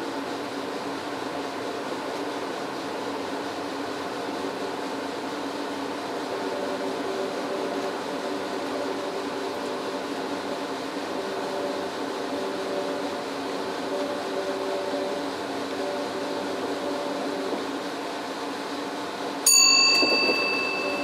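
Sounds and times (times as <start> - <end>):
locomotive cab rumble: 0.1 - 21.0.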